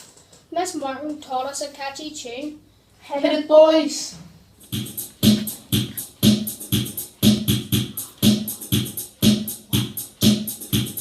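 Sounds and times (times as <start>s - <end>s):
drum machine beat: 4.6s - 11.0s.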